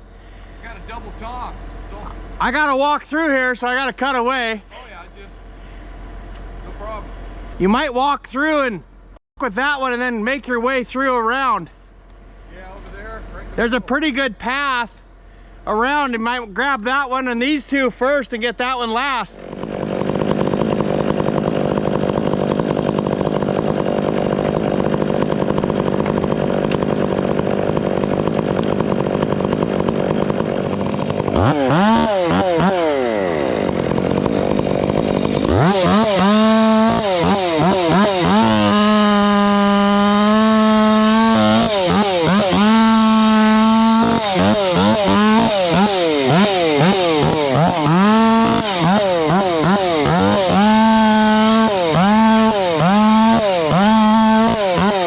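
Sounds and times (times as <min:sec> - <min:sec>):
chainsaw revving: 0:00.3 - 0:02.6, 0:18.9 - 0:55.0.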